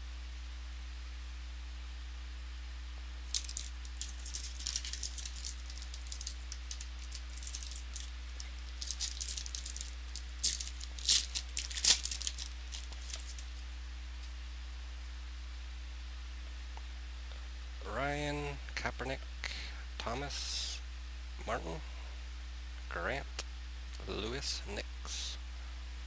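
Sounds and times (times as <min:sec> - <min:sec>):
low electrical hum: 0:00.0 - 0:26.0
trading card wrappers crackling: 0:03.3 - 0:14.3.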